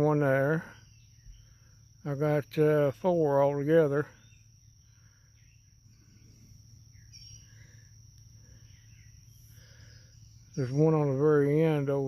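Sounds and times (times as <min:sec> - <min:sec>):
insects trilling: 0:00.0 - 0:12.0
soft bird chirps: 0:00.3 - 0:12.0.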